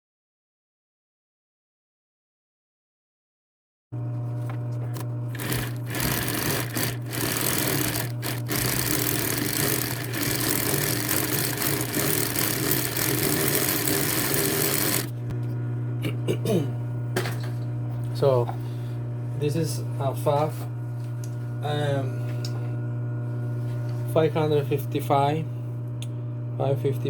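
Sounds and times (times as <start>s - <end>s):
sewing machine motor humming: 4.8s - 15.3s
sewing machine running at speed: 5.3s - 15.2s.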